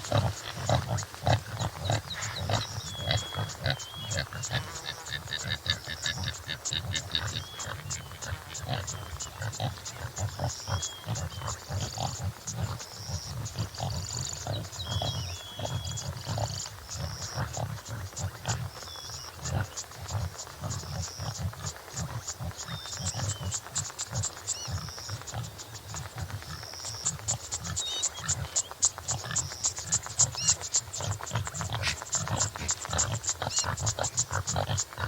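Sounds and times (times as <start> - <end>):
antelope grunting: 0.0 - 18.6, 31.0 - 35.0
birds whistling and chirping: 1.8 - 4.4, 12.9 - 16.2, 27.8 - 31.1.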